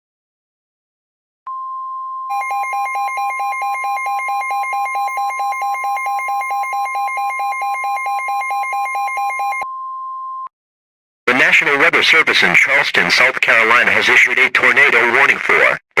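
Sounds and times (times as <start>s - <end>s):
pulsing buzzy alarm tone: 2.3s - 9.6s.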